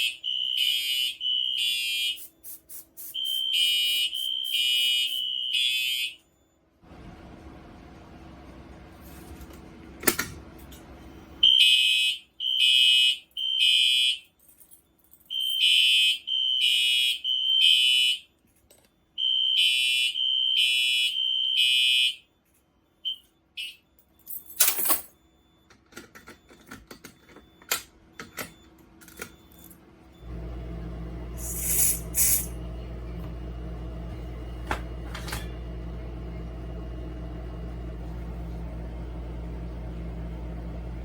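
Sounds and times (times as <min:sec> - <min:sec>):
fire alarm horn blasts: 0:00.0 - 0:06.6, 0:11.4 - 0:14.4, 0:15.3 - 0:18.4, 0:19.2 - 0:22.4, 0:23.0 - 0:24.2.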